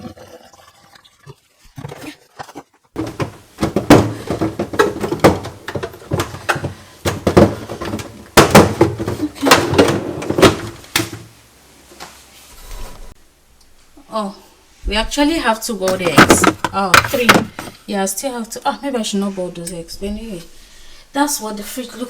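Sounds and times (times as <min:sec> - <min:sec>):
containers knocking and clattering: 0:03.0 - 0:11.4, 0:15.8 - 0:17.8.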